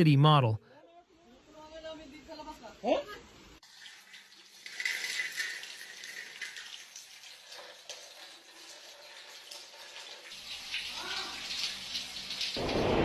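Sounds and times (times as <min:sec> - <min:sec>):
water splashing and running: 0:03.6 - 0:13.0.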